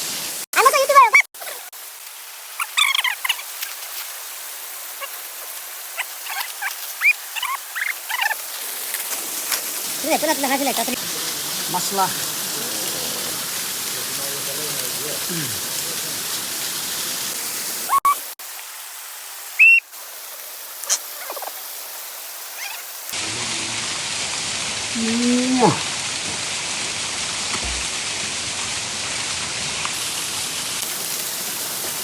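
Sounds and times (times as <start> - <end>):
river water rushing: 2.6 - 18.3
high-pitched cries: 19.6 - 19.8.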